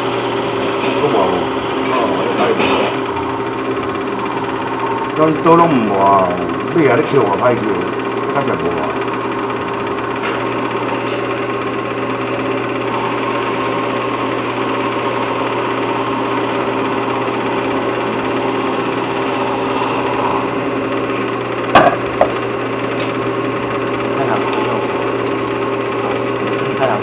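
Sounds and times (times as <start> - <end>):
turning tool cutting wood: 0.0 - 27.0
wood lathe humming: 0.0 - 27.0
sharp knocks: 21.7 - 22.4.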